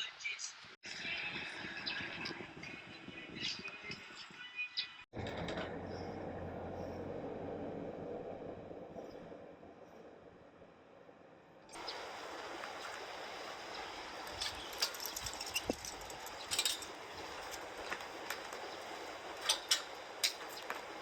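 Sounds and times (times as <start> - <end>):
steady hiss: 11.7 - 21.0.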